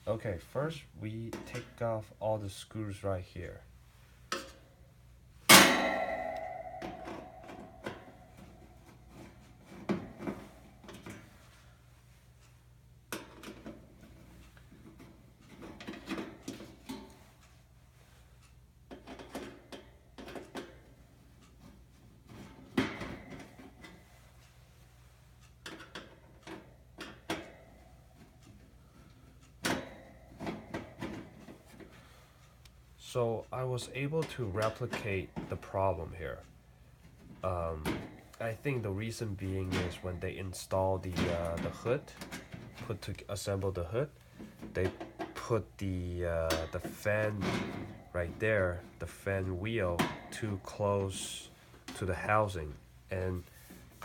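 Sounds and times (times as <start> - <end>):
ringing metal clank: 5.5 - 10.7.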